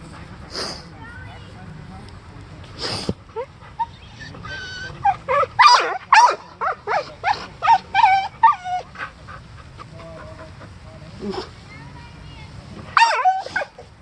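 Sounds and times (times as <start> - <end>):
dog yipping and whining: 3.4 - 8.9, 13.0 - 13.8.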